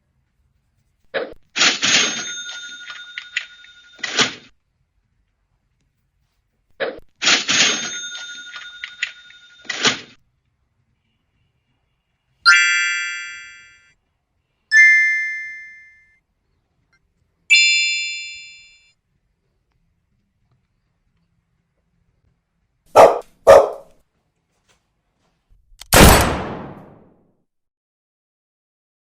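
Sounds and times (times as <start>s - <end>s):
chime-like tones: 14.7s - 16.2s.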